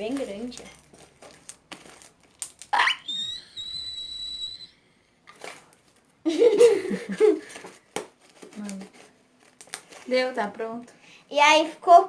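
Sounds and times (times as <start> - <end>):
high whistle: 2.8 - 4.8.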